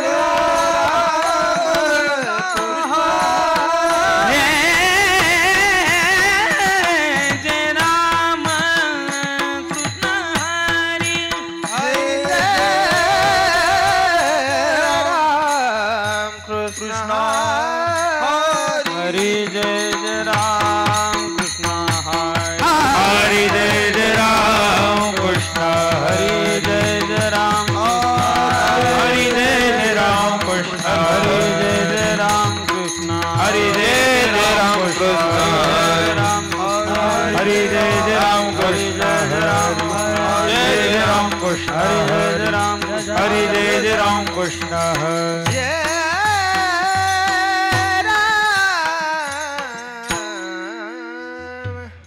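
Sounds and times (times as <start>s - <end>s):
steady accompanying tones: 0.0s - 47.9s
person singing wordless melody: 0.0s - 52.0s
hand drum beats: 19.3s - 48.0s.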